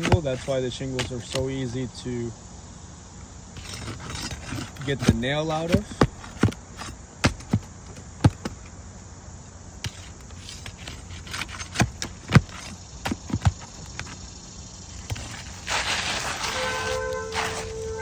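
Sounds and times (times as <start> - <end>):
tool clicking and knocking on roof: 0.0 - 1.4, 3.6 - 8.6, 9.8 - 14.2.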